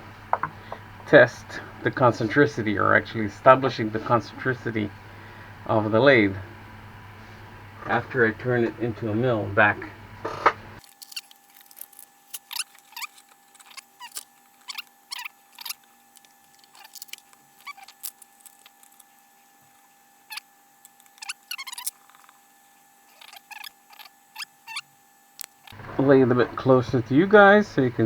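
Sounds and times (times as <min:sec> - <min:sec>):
faint steady hum: 0:00.0 - 0:28.0
metal tool parts clicking: 0:10.8 - 0:19.1, 0:20.3 - 0:22.4, 0:23.1 - 0:24.8.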